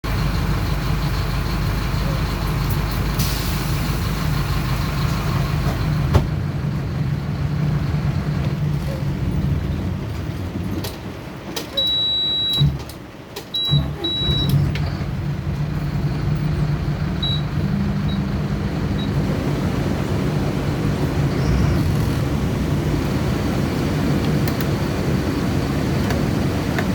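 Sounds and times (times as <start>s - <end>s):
bus engine running: 0.0s - 26.9s
short beeps: 11.8s - 12.7s, 13.6s - 14.6s, 17.2s - 18.3s
high electronic beep: 13.6s - 14.6s, 17.2s - 18.3s.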